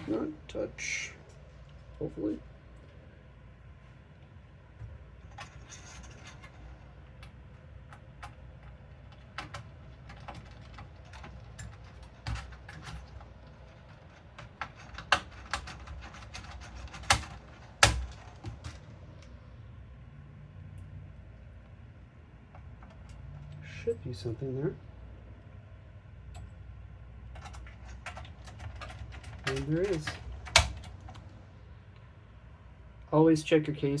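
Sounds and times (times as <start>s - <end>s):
computer hardware clicks and taps: 7.2s - 19.3s.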